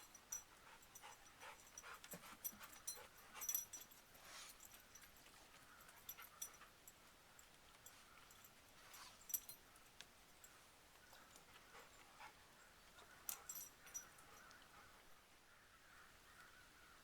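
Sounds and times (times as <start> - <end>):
dog panting: 0.4 - 4.8, 11.2 - 15.0.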